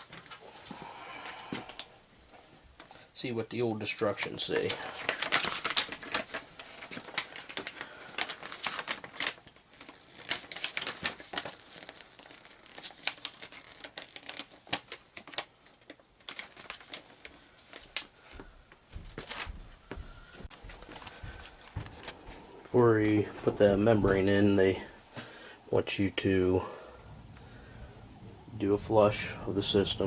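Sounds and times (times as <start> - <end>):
paper crinkling: 4.0 - 27.8.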